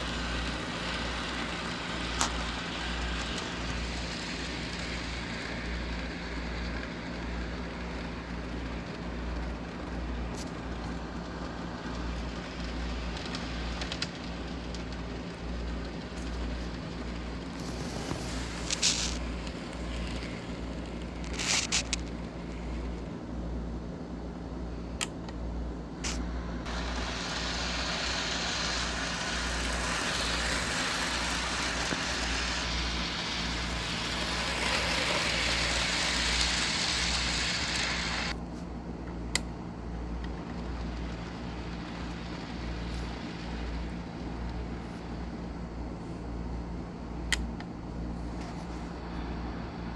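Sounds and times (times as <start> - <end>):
hiss: 0.0 - 9.1, 11.6 - 23.0, 26.0 - 38.4, 40.5 - 45.6
model train motor hum: 0.0 - 23.1, 26.0 - 38.4, 40.2 - 45.6
wheels rumbling on track: 0.0 - 23.8, 26.2 - 38.4, 39.0 - 46.0.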